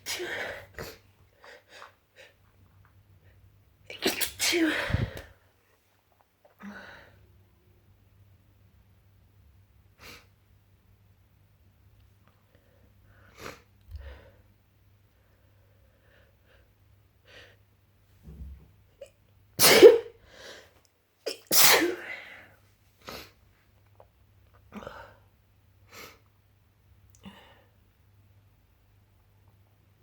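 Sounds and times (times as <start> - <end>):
person sneezing: 0.0 - 1.0, 4.0 - 5.3, 19.6 - 20.2, 21.3 - 22.3.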